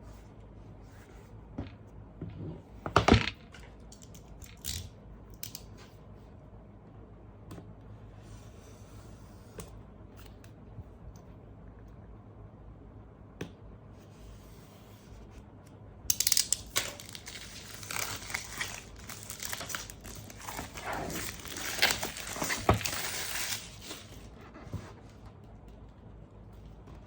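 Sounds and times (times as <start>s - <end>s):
packaging wrap crinkling and tearing: 16.2s - 24.3s.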